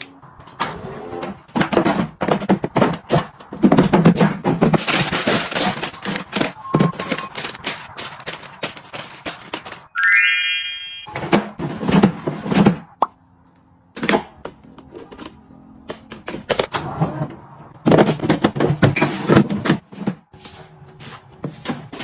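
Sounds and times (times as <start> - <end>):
kitchen items knocking and clicking: 1.4 - 9.9, 17.8 - 20.2.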